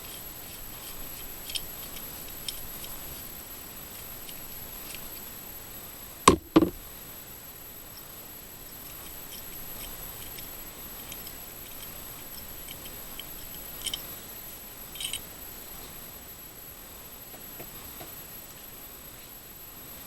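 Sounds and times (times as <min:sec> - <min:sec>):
small parts clicking on hard surface: 0:00.0 - 0:05.4, 0:08.7 - 0:14.3, 0:14.9 - 0:15.4
sharp knocks: 0:06.3 - 0:06.8.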